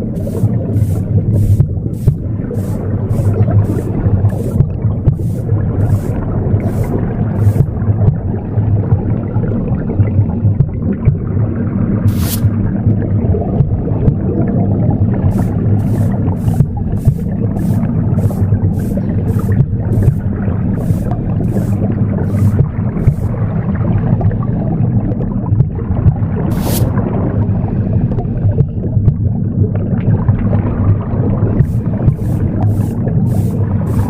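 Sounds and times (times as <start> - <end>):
broom strokes swishing: 0.0 - 7.8, 12.1 - 12.6, 15.3 - 23.4, 26.5 - 27.0, 31.6 - 34.0
muffled whooshing womb rumble: 0.0 - 34.0.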